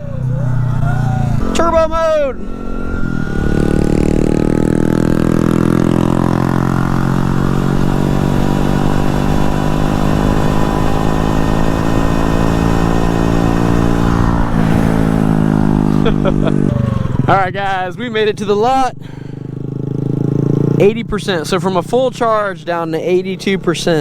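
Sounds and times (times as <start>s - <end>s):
dirt bike motor hum: 0.0s - 24.0s
wind buffeting microphone: 13.0s - 17.6s.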